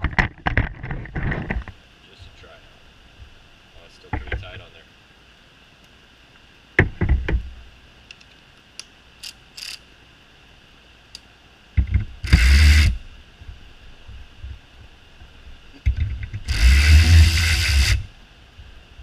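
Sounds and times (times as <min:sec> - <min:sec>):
cordless ratchet wrench buzzing: 0:09.2 - 0:09.8, 0:12.2 - 0:13.0, 0:16.4 - 0:18.1.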